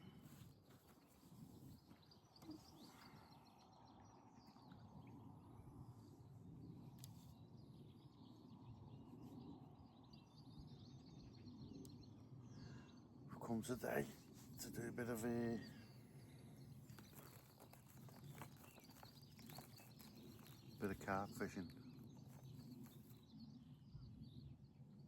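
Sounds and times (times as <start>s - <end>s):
distant birds chirping: 10.9s - 24.4s.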